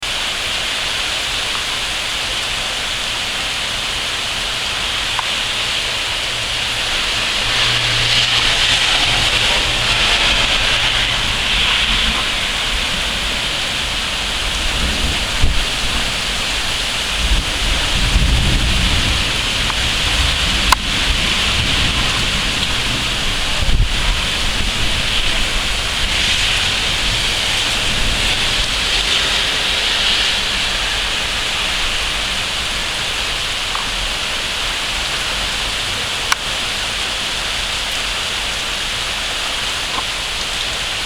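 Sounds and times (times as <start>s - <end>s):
heavy rain pouring: 0.0s - 41.0s
low rumbling: 5.6s - 33.0s.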